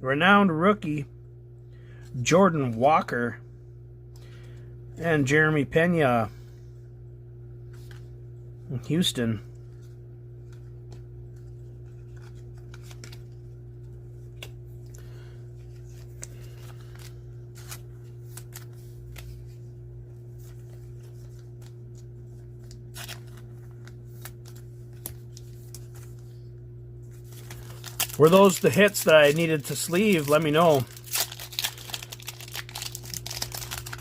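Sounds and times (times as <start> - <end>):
steady low hum: 0.0 - 34.0
cards clicking and rustling: 9.7 - 19.6, 20.4 - 26.2, 27.1 - 34.0.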